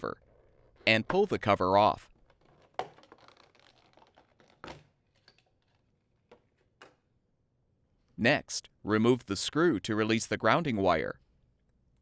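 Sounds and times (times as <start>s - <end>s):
scratchy plastic rustling: 2.1s - 5.9s.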